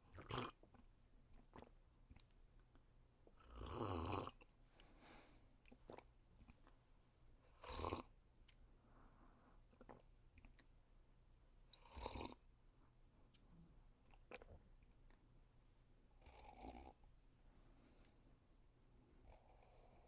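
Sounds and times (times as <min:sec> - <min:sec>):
person slurping coffee: 0:00.2 - 0:00.6, 0:16.2 - 0:17.0.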